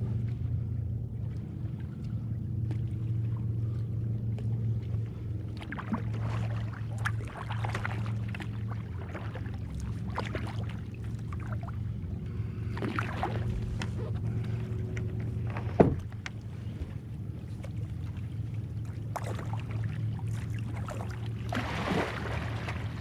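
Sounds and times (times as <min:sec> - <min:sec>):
low hum: 0:00.0 - 0:23.0
paddle splashing in water: 0:05.5 - 0:11.8, 0:12.4 - 0:23.0.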